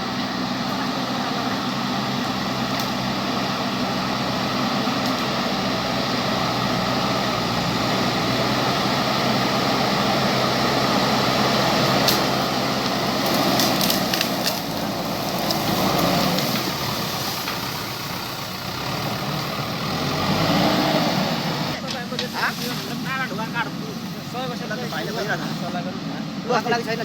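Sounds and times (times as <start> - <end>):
diesel engine running: 0.0 - 27.0.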